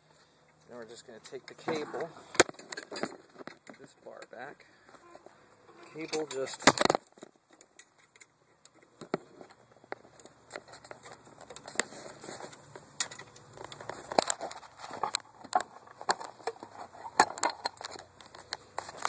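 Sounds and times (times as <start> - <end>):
cable clicking and rustling: 5.0 - 19.0.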